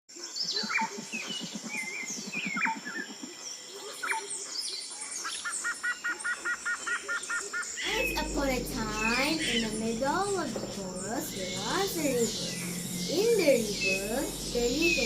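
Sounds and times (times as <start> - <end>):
birds chirping and calling: 7.8 - 15.0
low rapid pulsing trill: 7.8 - 15.0.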